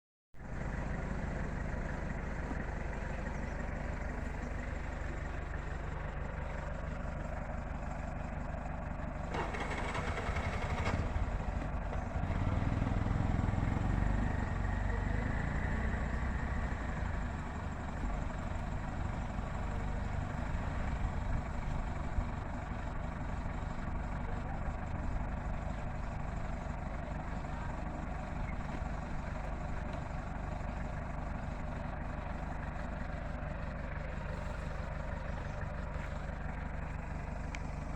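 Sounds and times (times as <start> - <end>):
engine idling: 0.4 - 37.9.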